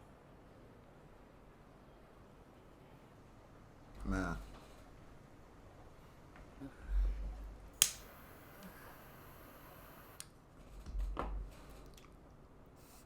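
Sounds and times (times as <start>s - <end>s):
dull low thumps: 6.8s - 7.8s, 10.8s - 11.6s
sharp click: 7.8s - 8.7s
faint hiss: 7.8s - 10.2s.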